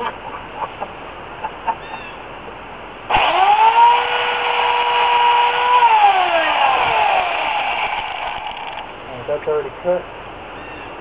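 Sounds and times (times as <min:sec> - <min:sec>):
electric chainsaw motor whine: 0:03.1 - 0:08.9.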